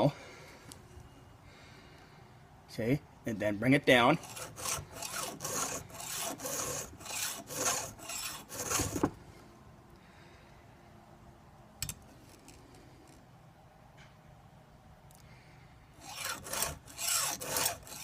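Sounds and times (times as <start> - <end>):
file rasping on chain: 4.2 - 9.1, 16.0 - 18.0.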